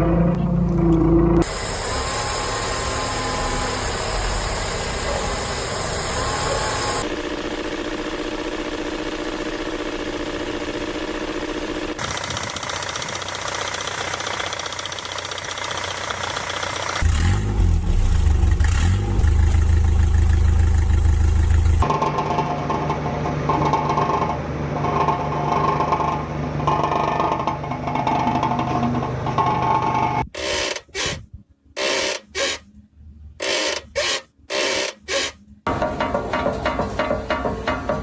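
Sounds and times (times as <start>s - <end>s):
deep engine rumble: 17.0s - 30.2s.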